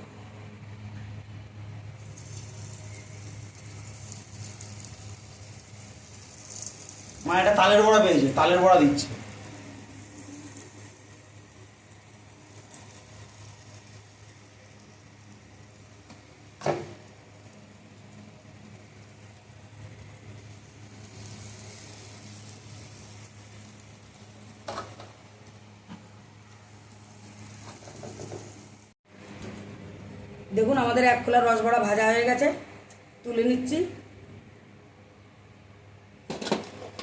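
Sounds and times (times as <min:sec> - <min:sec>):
fritters sizzling in hot oil: 0:01.8 - 0:29.0.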